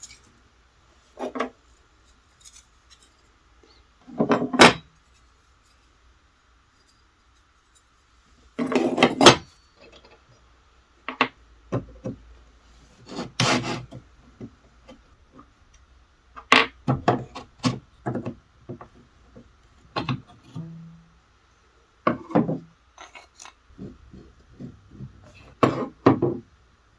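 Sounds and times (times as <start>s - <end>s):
hand scraping or filing: 12.9s - 14.0s.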